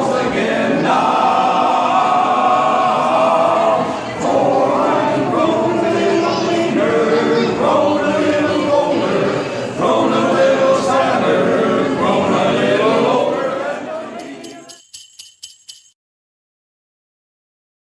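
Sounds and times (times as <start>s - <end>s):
men's chorus singing: 0.0s - 14.6s
jingle bells shaking: 14.0s - 16.0s.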